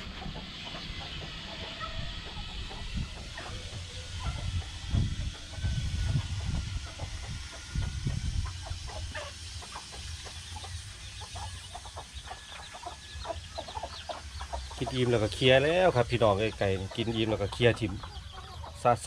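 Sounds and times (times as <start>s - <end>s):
heavy low rumbling: 0.0s - 8.7s
chickens clucking: 0.0s - 19.0s
faint chicken calls: 0.0s - 19.0s.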